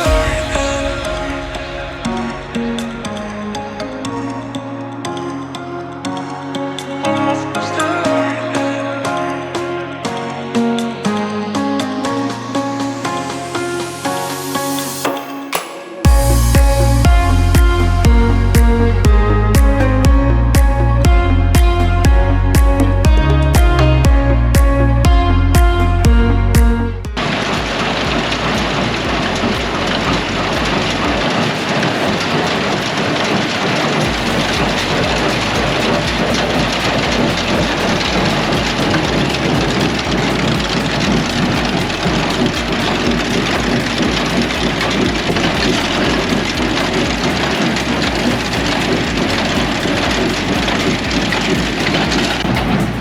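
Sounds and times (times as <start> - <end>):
tractor and hay baler running: 27.2 - 53.0.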